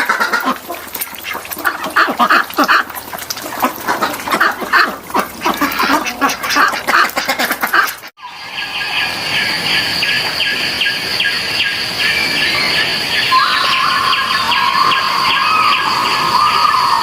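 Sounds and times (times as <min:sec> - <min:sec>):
bird chirping: 0:08.2 - 0:17.0
insects droning: 0:08.2 - 0:17.0
long falling whistle: 0:13.3 - 0:17.0.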